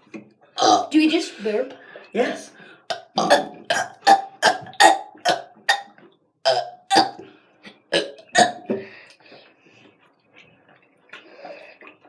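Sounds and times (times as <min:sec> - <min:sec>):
person burping: 0:00.6 - 0:00.9, 0:02.3 - 0:05.9, 0:06.5 - 0:07.2, 0:07.9 - 0:08.7.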